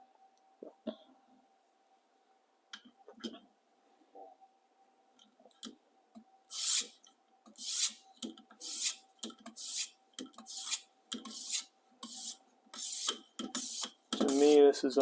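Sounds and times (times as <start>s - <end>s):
sharpening stone rasping on blade: 8.6s - 9.0s, 9.6s - 9.9s, 10.5s - 14.4s.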